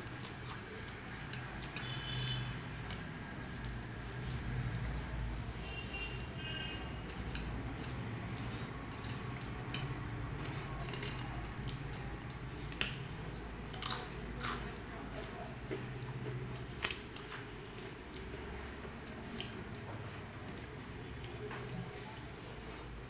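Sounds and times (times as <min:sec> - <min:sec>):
wet chewing: 0:00.0 - 0:04.2, 0:07.0 - 0:22.8
sharp clicks and crunches: 0:07.0 - 0:13.1, 0:13.7 - 0:18.4.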